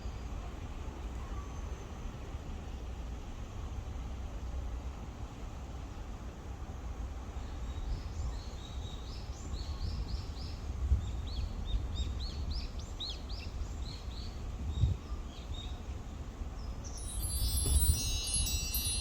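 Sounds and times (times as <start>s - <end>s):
wind on microphone: 17.0s - 19.0s.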